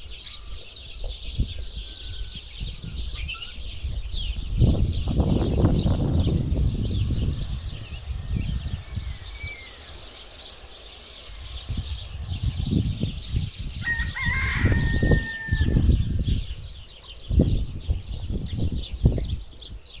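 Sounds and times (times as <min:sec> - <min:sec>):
chorus of birds chirping: 0:00.0 - 0:20.0
low rumbles: 0:04.6 - 0:16.8
loud long bird call: 0:05.3 - 0:16.6.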